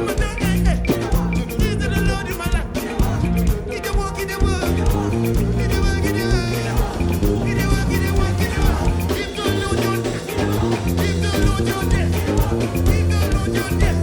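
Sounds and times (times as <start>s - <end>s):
band playing praise music: 0.0s - 14.0s
drums keeping a steady beat: 0.0s - 14.0s
stepping bass line: 0.0s - 14.0s
voices singing: 0.0s - 14.0s.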